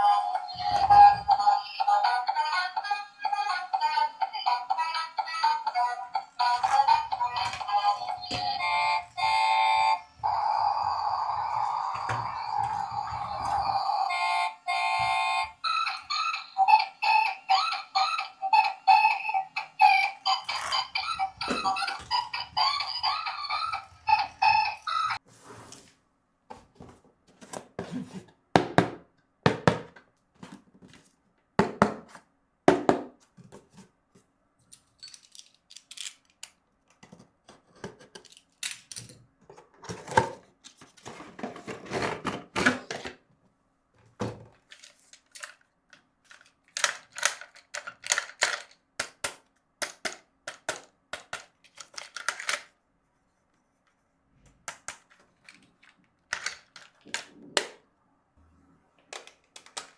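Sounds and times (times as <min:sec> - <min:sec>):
plastic toy clicks and knocks: 0:46.3 - 0:52.7, 0:54.6 - 0:57.8, 0:59.1 - 0:59.9.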